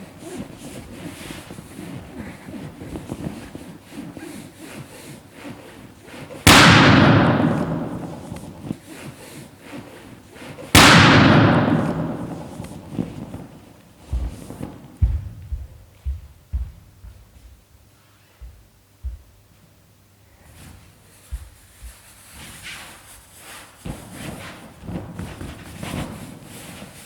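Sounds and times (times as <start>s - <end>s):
balloons bursting with echo: 6.4s - 8.8s, 10.6s - 15.8s.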